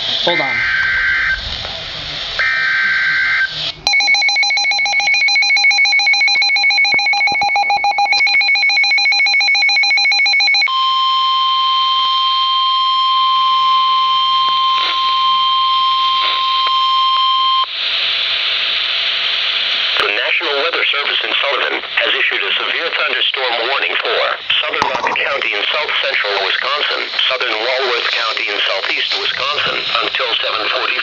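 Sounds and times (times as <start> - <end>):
radio hiss: 0.0 - 3.9, 14.7 - 15.0, 16.1 - 16.7, 17.8 - 31.0
steady warning alarm tone: 0.3 - 17.7
rapid electronic alert beeping: 2.4 - 10.7.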